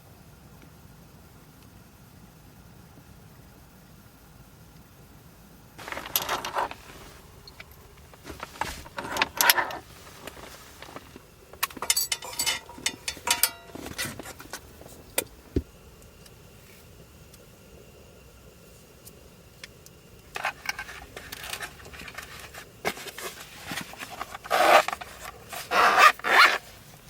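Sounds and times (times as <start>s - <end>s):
small hard objects clinking: 5.8s - 14.5s.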